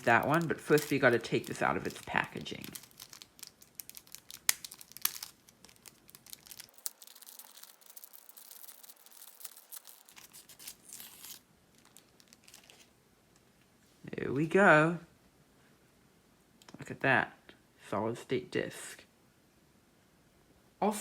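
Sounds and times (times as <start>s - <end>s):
packaging crinkling and tearing: 0.0s - 12.9s
faint crackles and clicks: 0.0s - 13.7s.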